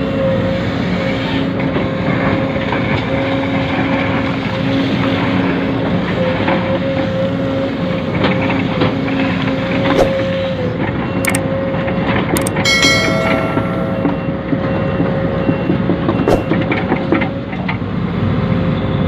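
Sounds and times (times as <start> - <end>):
sharp clicks: 12.4 - 12.6
short high electronic tone: 12.7 - 14.5.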